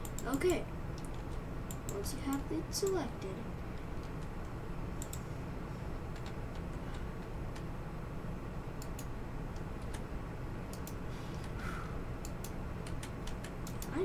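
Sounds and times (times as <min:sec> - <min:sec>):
computer keys and mouse clicks: 0:00.0 - 0:03.0, 0:04.0 - 0:05.2, 0:06.1 - 0:07.7, 0:08.8 - 0:10.1, 0:10.7 - 0:11.6, 0:12.2 - 0:14.0
steady low hum: 0:00.0 - 0:14.0.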